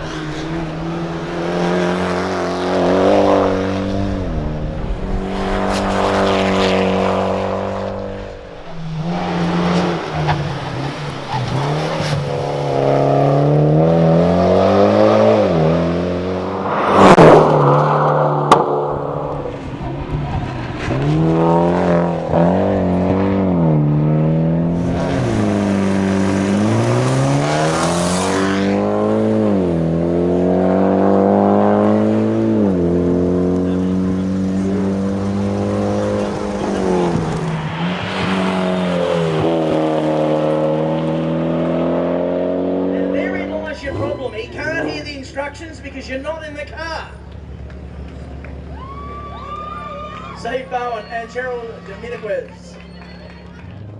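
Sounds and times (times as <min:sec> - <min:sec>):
rally car engine accelerating: 0:00.0 - 0:53.9.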